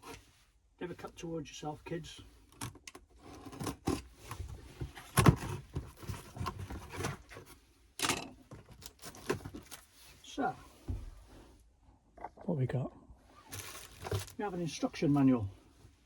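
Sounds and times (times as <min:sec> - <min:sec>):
thump: 0:10.9 - 0:11.3.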